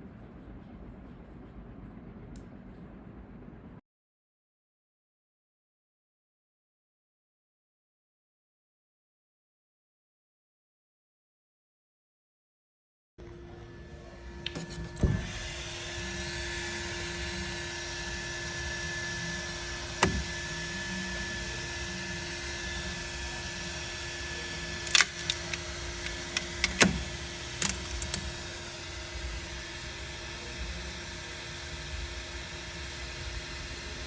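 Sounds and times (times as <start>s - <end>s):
small machine humming: 13.2s - 34.0s
sharp clicks and knocks: 24.8s - 28.3s.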